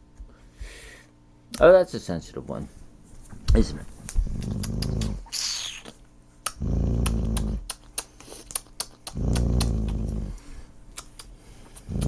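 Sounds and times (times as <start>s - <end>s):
sharp clicks: 4.1s - 5.5s, 6.4s - 10.1s
dog growling low: 4.2s - 5.2s, 6.6s - 7.7s, 9.1s - 10.6s.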